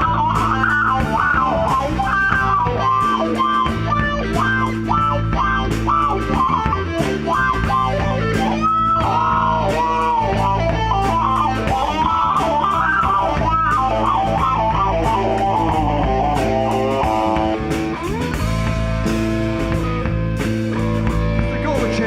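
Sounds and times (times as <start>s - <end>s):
bass and drums: 0.0s - 22.0s
electric lead guitar: 0.0s - 22.0s.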